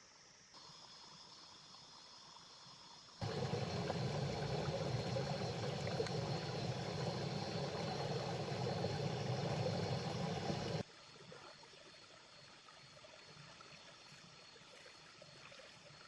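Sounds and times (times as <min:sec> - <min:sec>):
river water rushing: 0:03.2 - 0:10.8.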